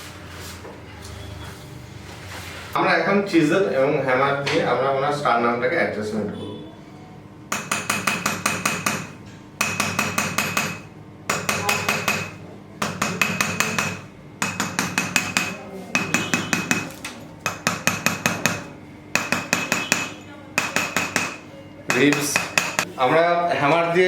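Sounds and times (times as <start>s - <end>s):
hammer tapping metal chisel: 7.5s - 22.9s.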